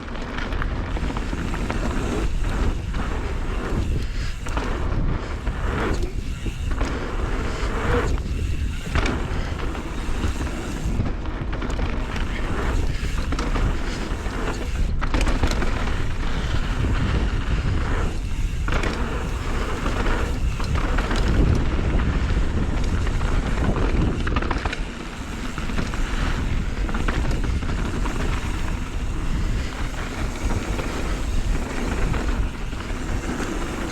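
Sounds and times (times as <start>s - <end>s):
mountain bike rattling on dirt trail: 0.0s - 33.9s
wind rushing over microphone: 0.0s - 33.9s.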